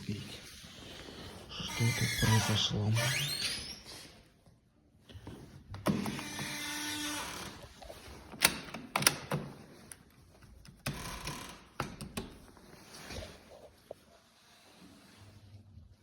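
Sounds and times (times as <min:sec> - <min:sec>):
sharp metallic clicks of lock parts: 0:08.4 - 0:09.4.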